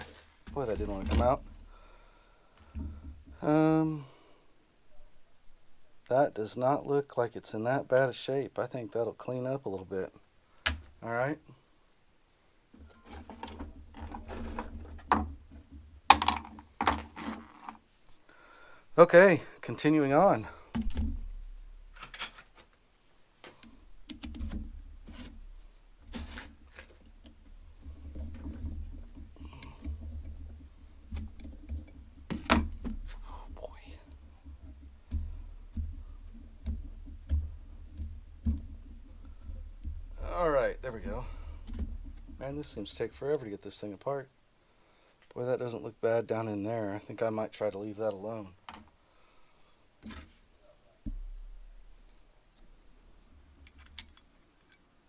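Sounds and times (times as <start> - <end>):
sharp knocks: 20.2 - 22.2, 24.1 - 43.2, 51.0 - 53.7
metal parts clicking and clattering: 20.9 - 22.7.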